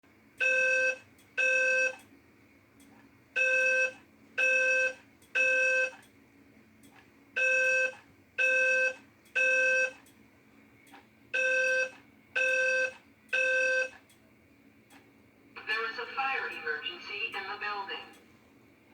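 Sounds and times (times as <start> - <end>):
fire alarm evacuation beeps: 0.4 - 2.1, 3.4 - 6.1, 7.4 - 10.1, 11.3 - 14.0.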